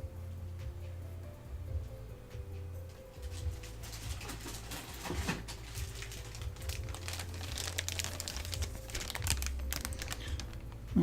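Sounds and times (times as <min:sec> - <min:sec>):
packaging crinkling and rustling: 0:03.2 - 0:11.0.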